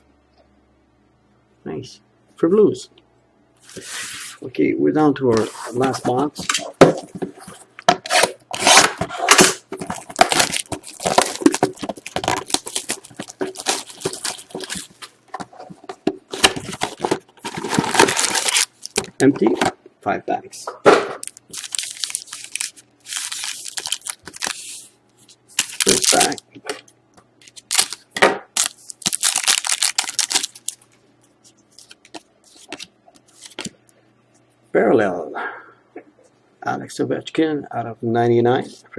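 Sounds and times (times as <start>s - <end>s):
foil packs rustling: 8.0s - 19.3s, 21.2s - 24.9s, 25.5s - 26.4s, 27.5s - 28.0s, 28.6s - 30.9s
cardboard and wrapper tearing: 8.1s - 15.0s, 16.3s - 19.2s, 21.2s - 24.8s, 25.5s - 26.4s, 27.5s - 28.0s, 28.6s - 30.8s.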